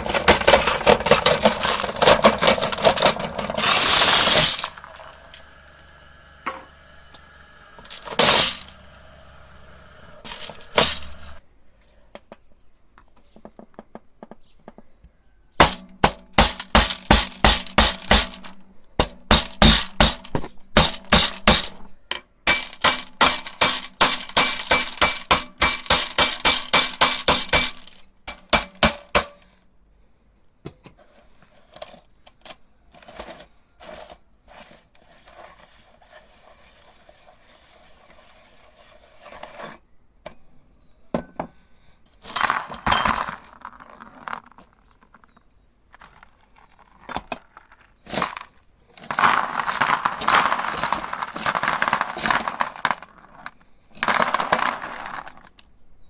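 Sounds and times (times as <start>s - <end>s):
glass marbles clinking in grinder: 0.0s - 11.4s, 49.0s - 53.2s
low motor hum: 2.7s - 11.4s.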